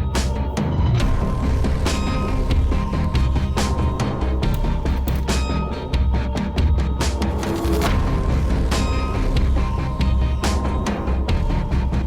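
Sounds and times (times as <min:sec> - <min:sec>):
electronic music with heavy beat: 0:00.0 - 0:12.0.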